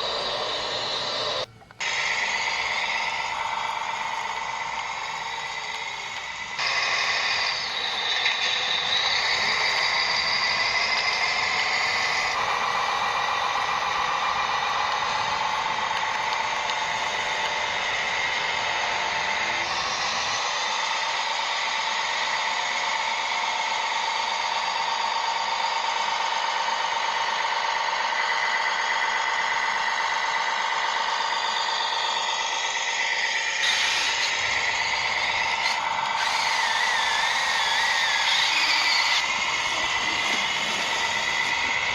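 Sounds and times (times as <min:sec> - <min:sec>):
small electric motors whining: 0:00.0 - 0:24.3, 0:33.0 - 0:41.9.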